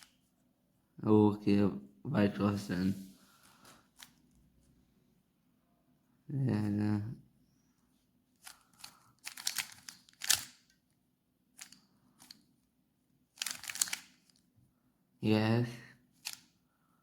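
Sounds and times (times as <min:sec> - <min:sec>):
puzzle cube layers clacking: 0:08.4 - 0:10.7, 0:13.3 - 0:14.3.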